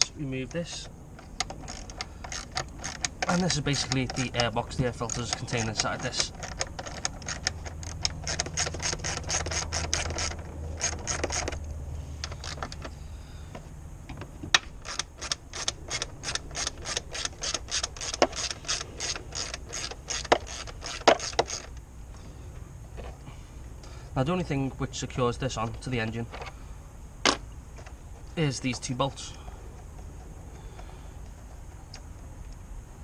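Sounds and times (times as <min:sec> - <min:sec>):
socket ratchet clicking: 0:00.5 - 0:12.9, 0:14.5 - 0:21.8.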